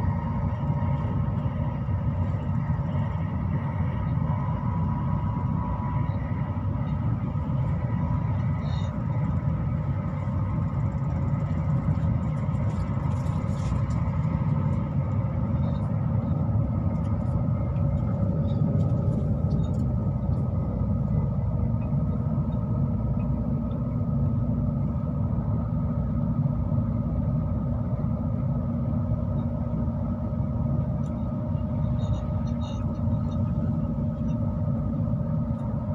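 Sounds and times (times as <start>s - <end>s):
faint steady tones: 0.0s - 35.9s
vehicle rumble: 0.0s - 35.9s.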